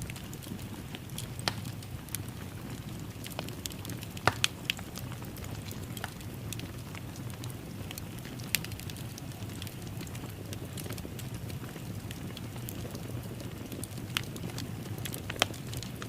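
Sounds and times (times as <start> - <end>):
wood fire crackling: 0.0 - 16.0.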